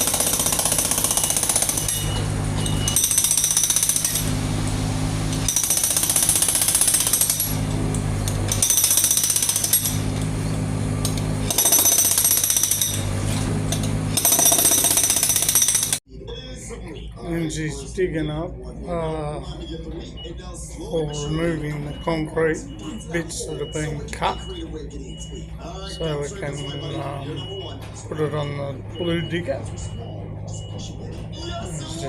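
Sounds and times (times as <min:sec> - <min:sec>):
jackhammer hammering concrete: 0:00.0 - 0:04.4, 0:05.0 - 0:16.0
machine engine droning: 0:00.0 - 0:16.0.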